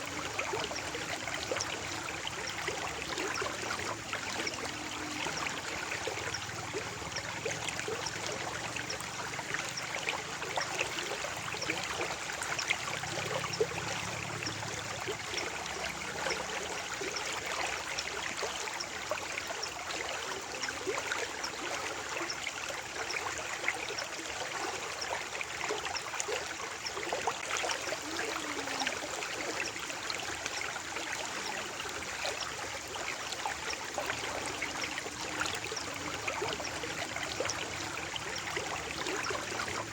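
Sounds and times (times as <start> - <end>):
stream babbling over stones: 0.0 - 39.9.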